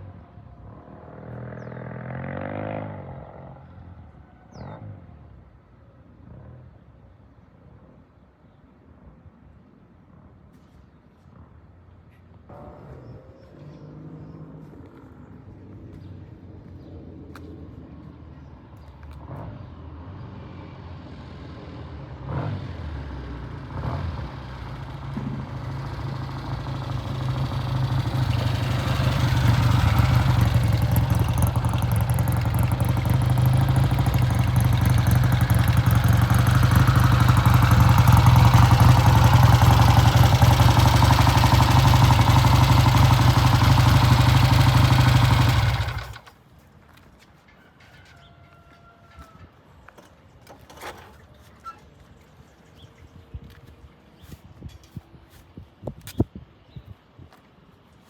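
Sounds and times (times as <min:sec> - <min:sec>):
motorcycle engine approaching: 0:00.7 - 0:04.9, 0:23.4 - 0:46.4.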